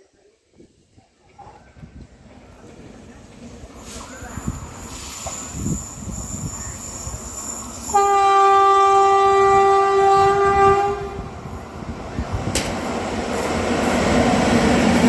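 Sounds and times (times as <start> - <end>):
approaching train rumble: 0.9 - 15.0
train horn blast: 7.9 - 11.4.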